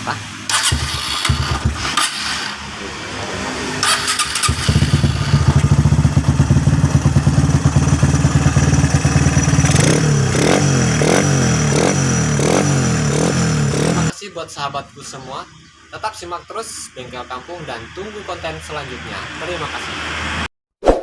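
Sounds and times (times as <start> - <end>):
motorcycle engine idling and revving: 0.3 - 14.1.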